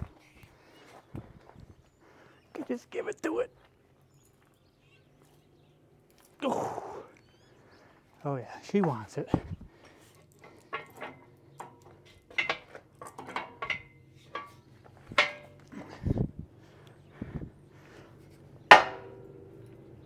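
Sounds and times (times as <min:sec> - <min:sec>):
steel tools clanking on metal: 0:08.6 - 0:16.1, 0:17.9 - 0:20.0.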